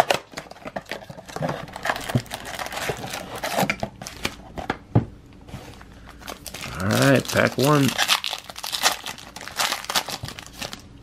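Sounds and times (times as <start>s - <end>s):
packaging crinkling and tearing: 0.0s - 4.7s, 5.7s - 10.9s.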